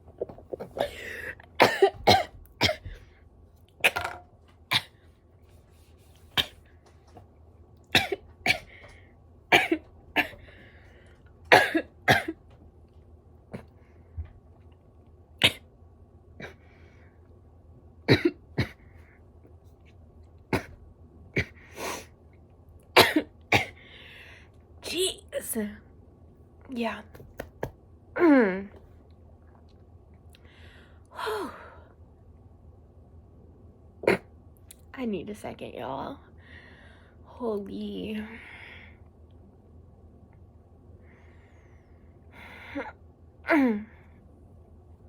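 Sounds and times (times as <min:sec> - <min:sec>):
woman coughing hard: 0:01.6 - 0:02.9, 0:07.9 - 0:08.7, 0:09.5 - 0:10.4, 0:11.5 - 0:12.4, 0:18.1 - 0:18.8, 0:23.0 - 0:23.8
short breaths: 0:36.4 - 0:37.2.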